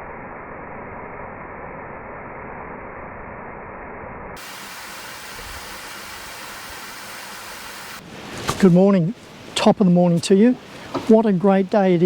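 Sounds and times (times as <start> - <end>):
rushing water: 4.4 - 11.4.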